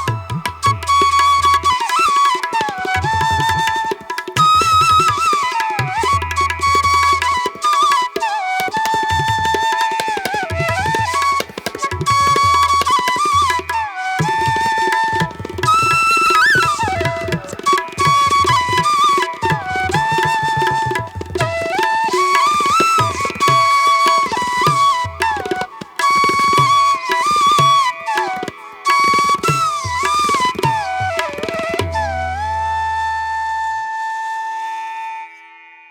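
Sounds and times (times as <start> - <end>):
hand drums: 0.0 - 32.2
flute-like melody: 0.0 - 35.9.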